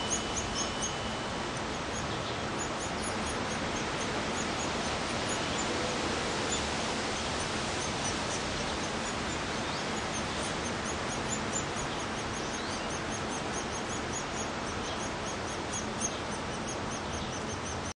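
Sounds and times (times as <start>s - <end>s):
nestlings chirping: 0.0s - 5.8s
constant noise hiss: 0.0s - 18.0s.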